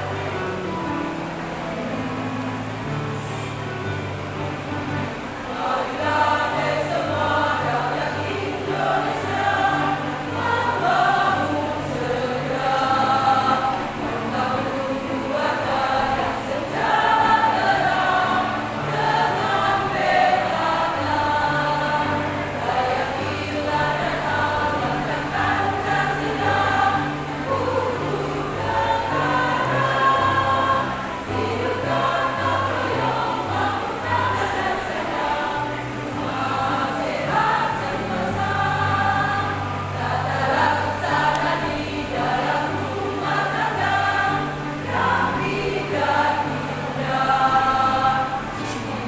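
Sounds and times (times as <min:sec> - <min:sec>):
women's choir singing: 0:00.0 - 0:49.0.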